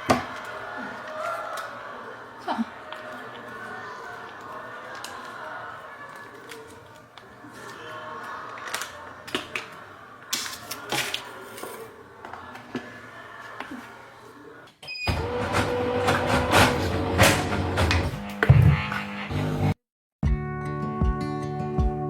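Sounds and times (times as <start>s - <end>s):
background music: 19.3s - 22.0s.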